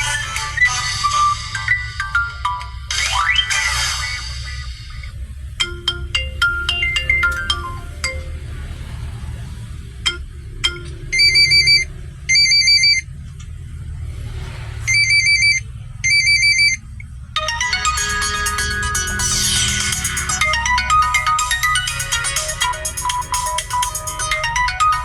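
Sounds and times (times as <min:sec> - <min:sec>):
melodic ringtone: 0:00.0 - 0:08.9, 0:10.0 - 0:13.0, 0:17.4 - 0:25.0
low hum: 0:00.0 - 0:24.9
trilling electronic ring: 0:17.4 - 0:24.3
descending chime notes: 0:17.4 - 0:25.0.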